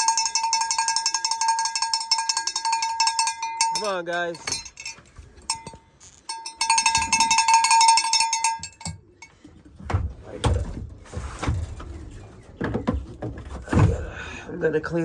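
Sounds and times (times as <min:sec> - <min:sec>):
bell shaken rapidly: 0:00.0 - 0:05.7, 0:06.3 - 0:08.9.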